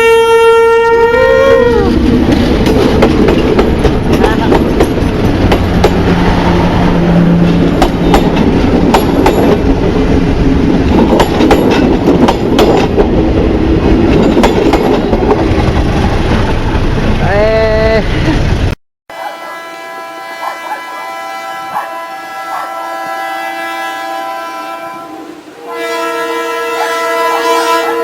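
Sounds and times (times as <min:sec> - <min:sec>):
train horn note: 0:00.0 - 0:02.0, 0:19.1 - 0:28.0
train rumbling: 0:00.1 - 0:28.0
wheels clacking over rail joints: 0:01.9 - 0:06.2, 0:07.4 - 0:17.2.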